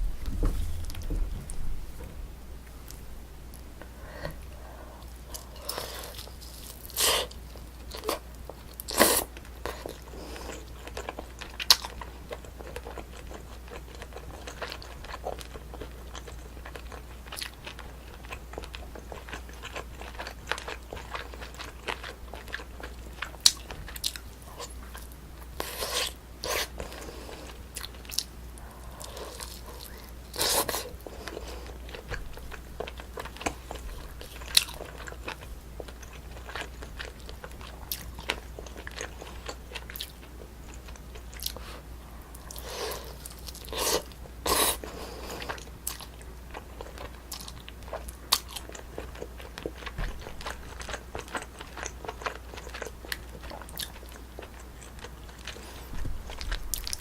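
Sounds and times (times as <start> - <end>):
biting and chewing: 42.4 - 57.0.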